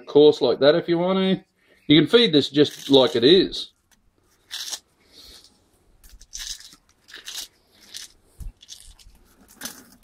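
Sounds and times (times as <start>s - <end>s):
eggshells crunching: 2.5s - 10.0s.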